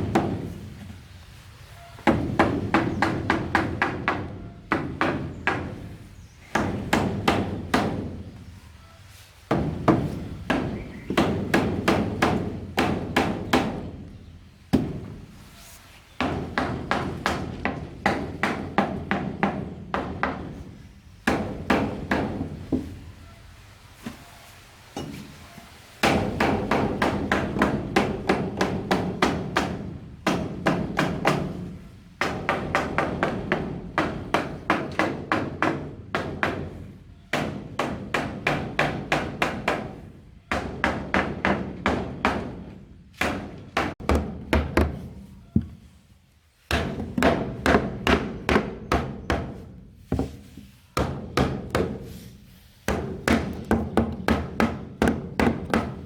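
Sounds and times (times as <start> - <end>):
hammer driving nails into wood: 52.9 - 56.0.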